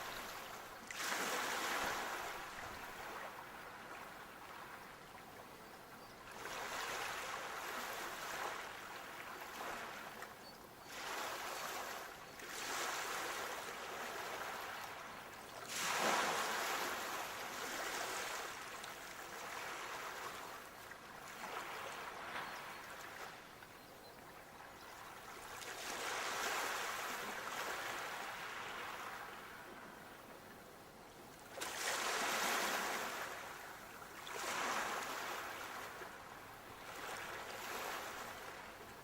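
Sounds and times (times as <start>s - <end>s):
sea waves breaking on shore: 0.0s - 5.2s, 6.3s - 23.6s, 24.4s - 30.1s, 31.4s - 39.0s.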